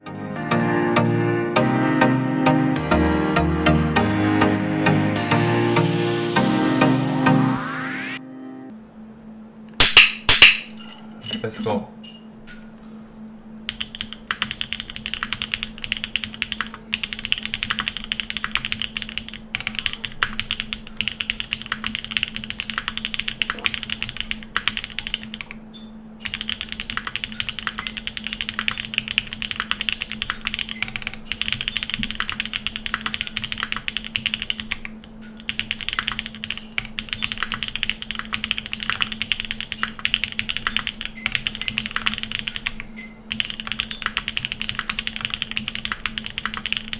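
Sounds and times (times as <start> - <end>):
fast typing on mechanical keyboard: 13.6 - 25.6, 26.2 - 46.9.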